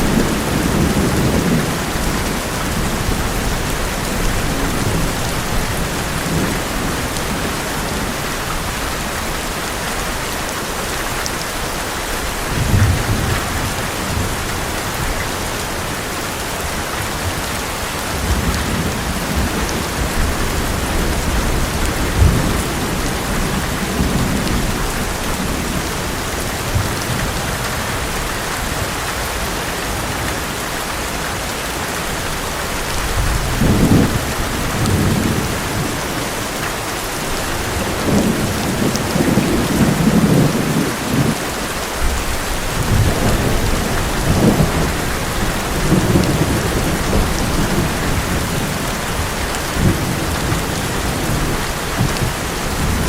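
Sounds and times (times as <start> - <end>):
thunder rumbling: 0.0 - 8.8, 16.7 - 28.2, 33.0 - 36.6, 37.2 - 53.0
heavy rain on metal roof: 0.0 - 53.0.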